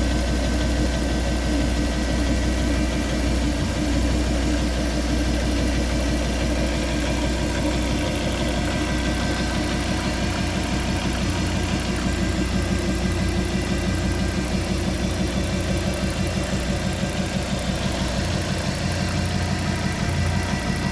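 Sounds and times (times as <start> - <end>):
car engine idling: 0.0 - 20.9.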